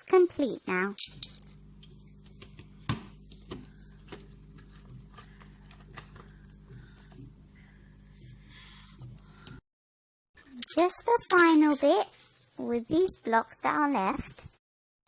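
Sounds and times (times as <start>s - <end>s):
low electrical hum: 0.0s - 9.6s.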